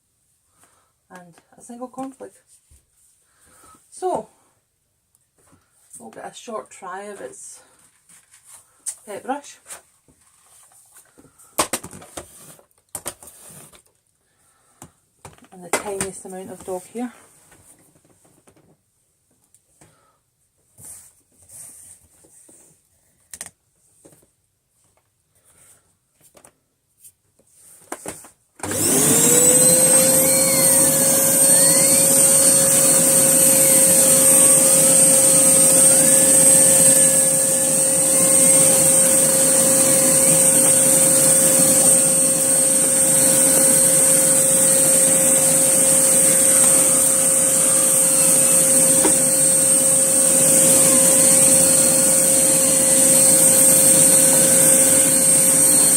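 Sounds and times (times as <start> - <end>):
vacuum cleaner motor whine: 28.6 - 55.9.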